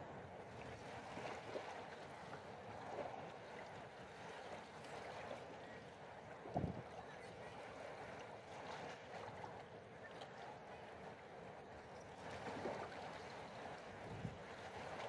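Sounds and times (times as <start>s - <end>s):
seawater lapping: 0.0s - 15.0s.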